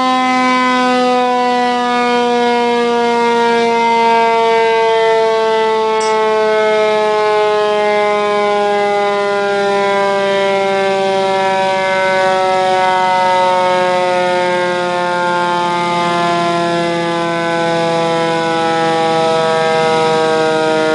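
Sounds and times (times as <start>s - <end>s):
mechanical siren winding down: 0.0s - 20.9s.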